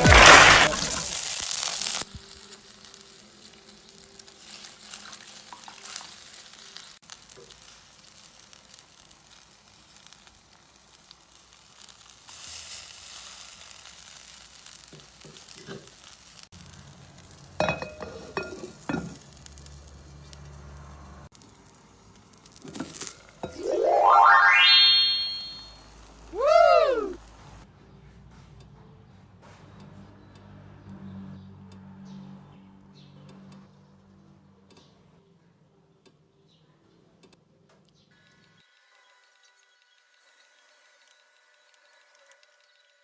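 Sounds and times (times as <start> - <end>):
egg sizzling in oil: 0.0 - 27.6, 38.5 - 43.0.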